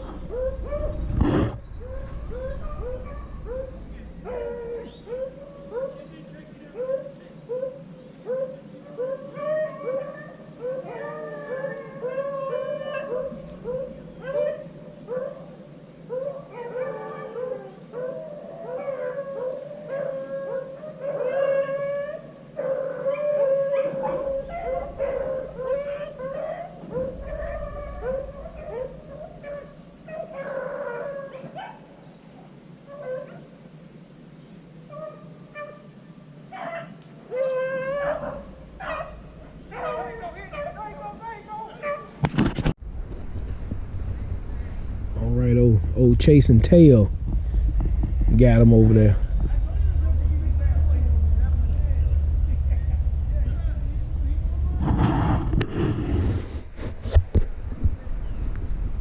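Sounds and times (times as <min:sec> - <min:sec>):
pack of dogs baying: 0:00.0 - 0:32.0, 0:34.9 - 0:42.2.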